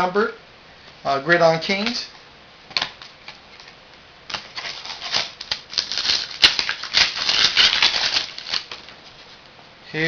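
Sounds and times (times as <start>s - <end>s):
foil wrapper crinkling: 4.3s - 9.4s.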